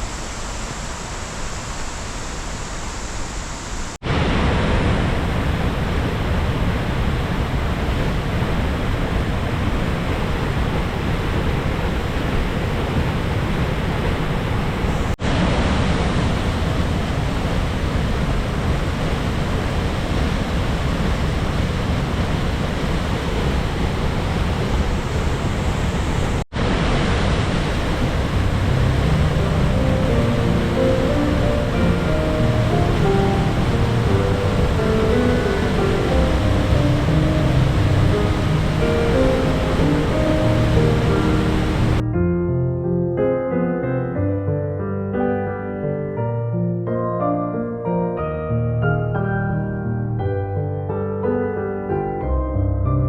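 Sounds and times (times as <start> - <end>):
waterfall roaring: 0.0 - 42.0.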